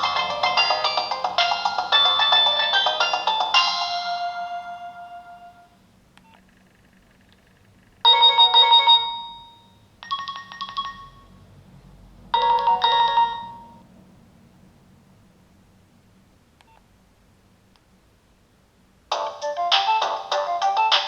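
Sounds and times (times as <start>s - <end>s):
polyphonic ringtone melody: 0.0s - 5.7s, 8.1s - 11.4s, 12.3s - 13.8s, 19.1s - 21.0s
faint click: 16.6s - 16.9s.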